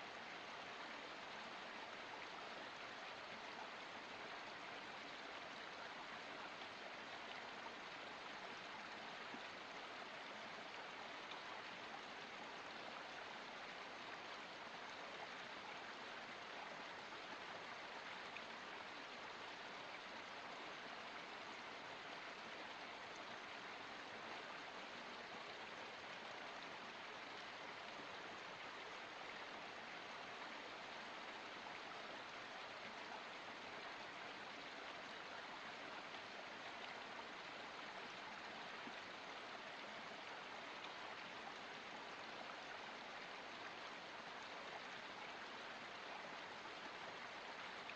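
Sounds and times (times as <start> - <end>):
stream flowing: 0.0 - 47.9.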